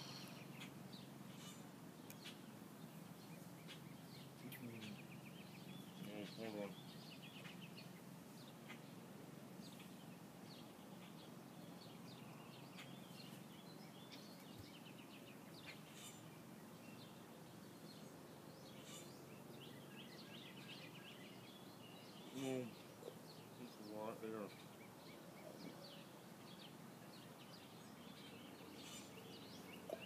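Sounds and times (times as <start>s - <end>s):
small bird chirps: 0.0s - 2.4s, 17.8s - 30.0s
faint steady hum: 0.0s - 30.0s.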